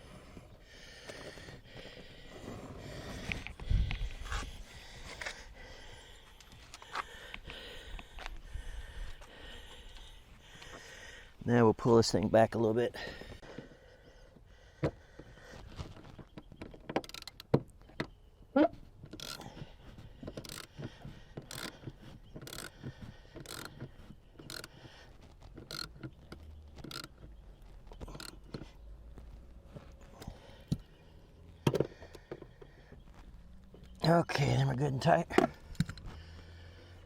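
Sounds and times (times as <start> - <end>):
ratchet wrench clicking: 17.0 - 17.5, 19.1 - 19.4, 20.4 - 20.7, 21.4 - 21.8, 22.4 - 22.7, 23.4 - 23.8, 24.4 - 24.8, 25.6 - 26.1, 26.8 - 27.2, 28.0 - 28.6.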